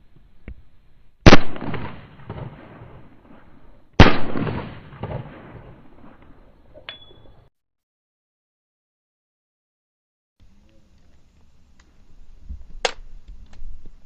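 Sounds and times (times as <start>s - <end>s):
handgun shots with echo: 1.3s - 2.8s, 4.0s - 6.3s.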